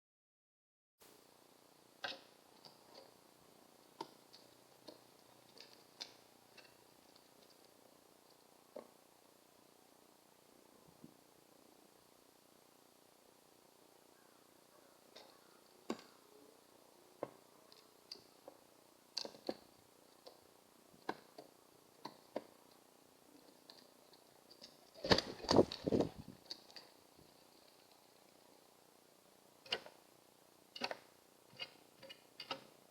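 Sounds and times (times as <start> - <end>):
pigeons pecking at bird feeder: 2.0 - 9.0, 17.2 - 28.7.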